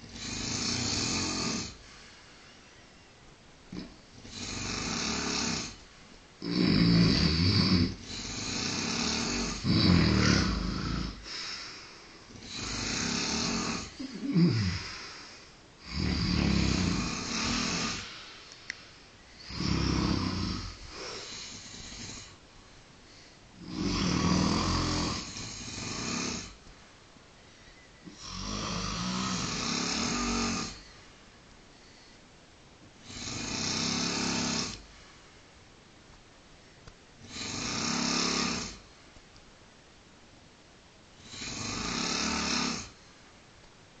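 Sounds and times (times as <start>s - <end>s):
man snoring: 0.0s - 1.8s, 3.7s - 5.8s, 6.4s - 11.7s, 12.3s - 18.3s, 19.4s - 22.4s, 23.6s - 26.6s, 28.0s - 30.9s, 33.0s - 34.8s, 37.2s - 38.8s, 41.2s - 43.0s
quiet breathing: 0.0s - 35.7s, 36.5s - 39.2s, 41.1s - 43.5s.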